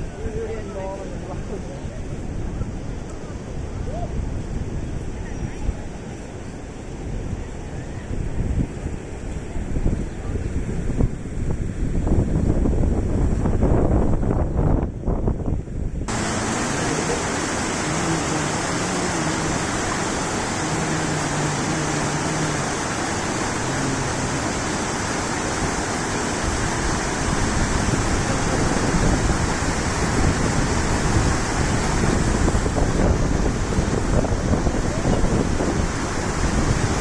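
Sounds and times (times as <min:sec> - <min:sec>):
wind buffeting microphone: 0:07.0 - 0:37.0
river water roaring: 0:16.1 - 0:37.0.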